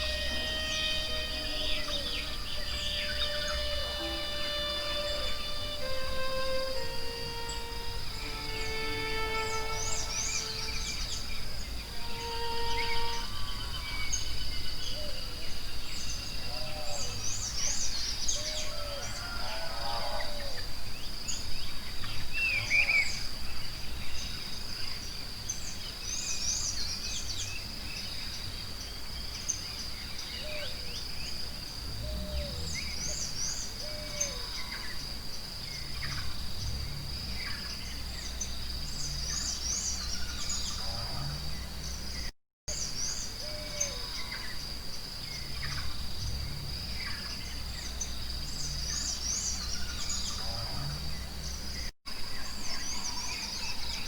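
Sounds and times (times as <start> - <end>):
small birds chirping: 0.0 - 18.6
high insect drone: 0.0 - 28.6, 30.4 - 42.3, 43.4 - 53.0.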